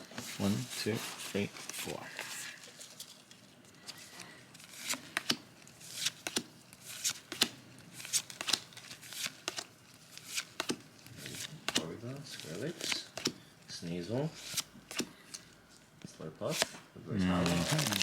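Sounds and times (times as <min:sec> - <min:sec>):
trading cards shuffling: 0:00.2 - 0:13.4.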